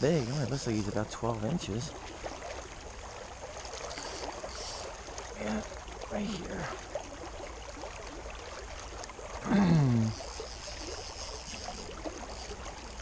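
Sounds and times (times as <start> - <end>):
man's short vocal sound: 9.4 - 10.1.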